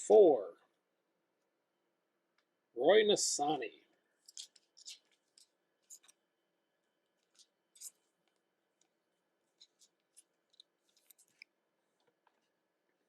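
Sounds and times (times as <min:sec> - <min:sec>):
trading cards swishing and clicking: 0:04.2 - 0:06.2, 0:07.2 - 0:08.9, 0:09.5 - 0:12.5.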